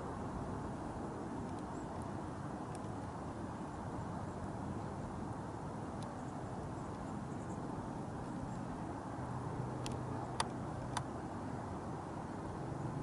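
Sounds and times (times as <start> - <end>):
outdoor rumble and hiss: 0.0 - 13.0
faint ticks: 1.4 - 2.1, 2.7 - 3.0, 9.8 - 11.1.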